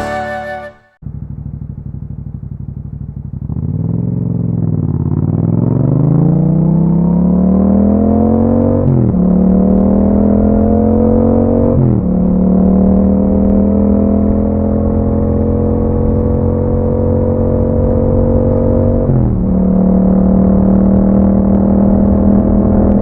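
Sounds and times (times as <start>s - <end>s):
intro music: 0.0s - 0.9s
motorcycle accelerating: 0.0s - 23.0s
motorcycle engine idling: 1.0s - 5.6s.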